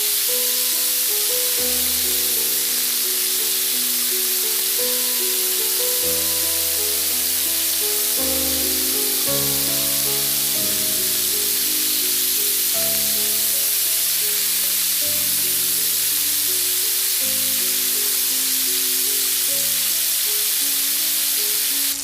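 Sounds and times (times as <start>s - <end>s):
chicken sizzling in frying: 0.0s - 22.0s
background music: 0.1s - 21.7s.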